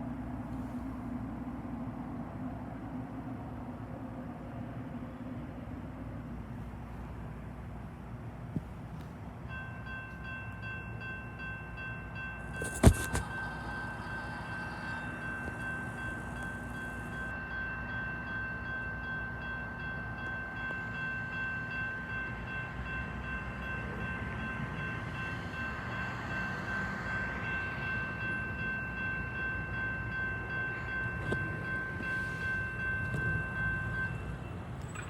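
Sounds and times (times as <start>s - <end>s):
electronic crossing bell ringing: 9.5s - 35.0s.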